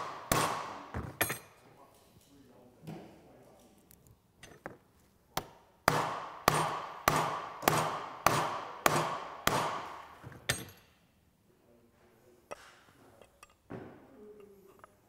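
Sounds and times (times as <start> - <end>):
hammer tapping metal: 5.4 - 10.8.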